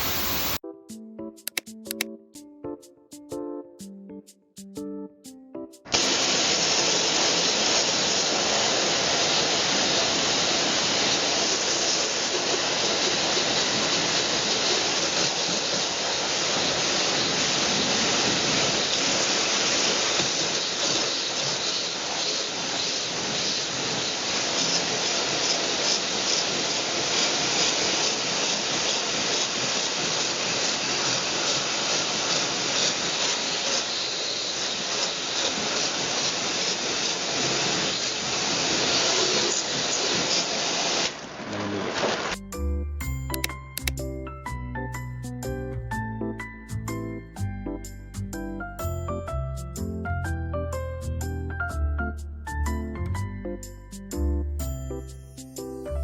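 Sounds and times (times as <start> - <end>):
pressure washer spraying water: 0.0 - 0.6, 5.9 - 41.1.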